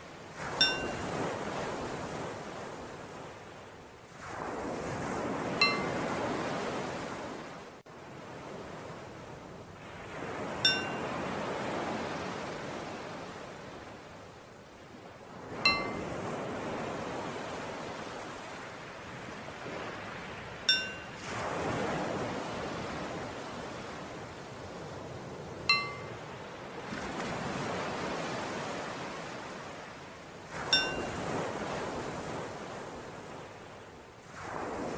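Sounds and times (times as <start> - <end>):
ocean waves washing: 0.0 - 34.9
small bell struck: 0.6 - 1.0, 5.6 - 5.9, 10.6 - 11.0, 15.6 - 16.0, 20.7 - 21.2, 25.7 - 26.2, 30.7 - 31.1.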